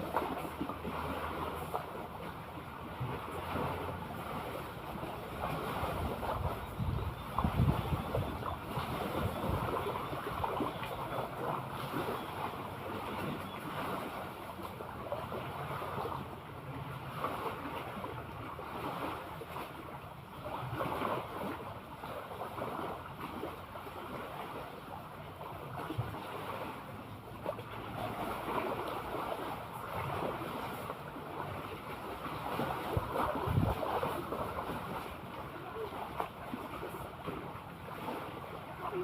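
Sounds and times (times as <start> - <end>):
sea waves lapping: 0.0 - 39.0
wind buffeting microphone: 4.2 - 12.1, 32.5 - 35.0.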